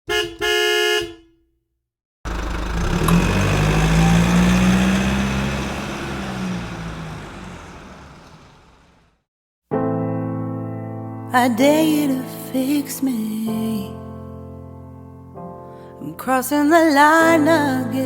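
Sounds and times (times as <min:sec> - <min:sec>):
car engine running: 0:02.3 - 0:09.1.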